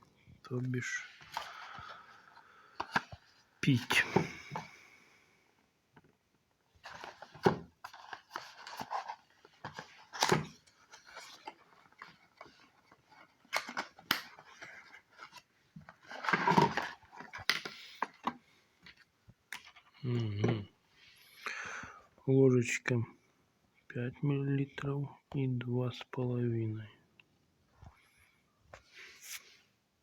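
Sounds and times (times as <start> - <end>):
packaging rustling: 6.8 - 18.4.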